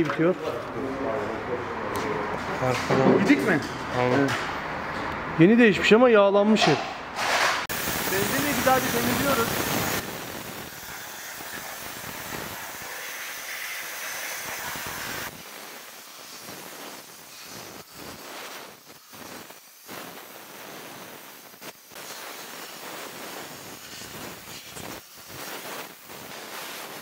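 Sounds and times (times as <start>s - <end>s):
spraying hiss: 7.7s - 27.0s.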